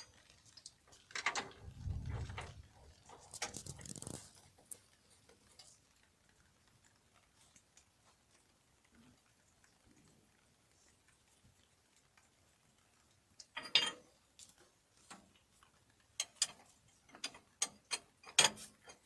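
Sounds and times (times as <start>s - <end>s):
metal parts clicking and knocking: 13.6s - 14.0s.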